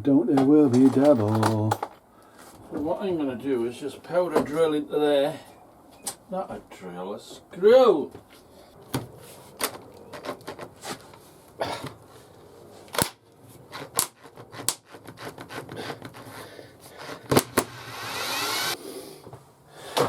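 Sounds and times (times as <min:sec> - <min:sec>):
power drill whirring: 0:17.1 - 0:18.8.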